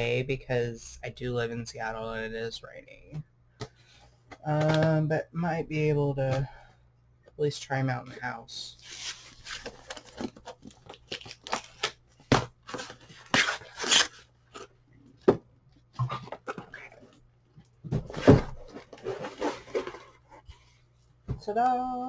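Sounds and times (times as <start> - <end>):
packaging tearing and rustling: 8.8 - 14.7.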